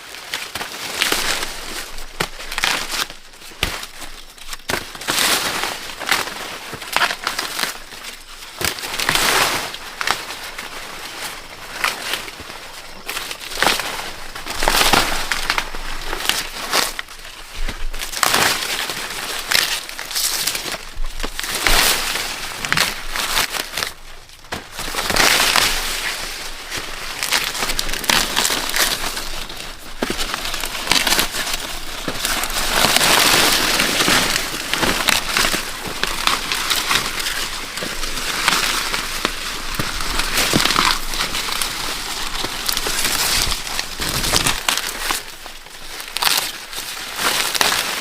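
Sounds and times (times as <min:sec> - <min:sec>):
corn stalks snapping: 0:00.0 - 0:48.0
dry corn leaves rustling: 0:00.0 - 0:48.0.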